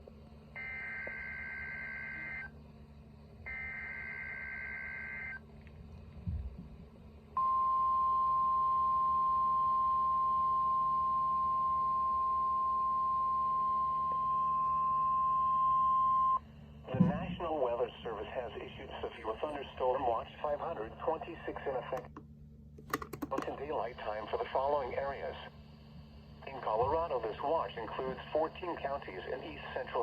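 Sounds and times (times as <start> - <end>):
steady attention tone: 7.4 - 17.7.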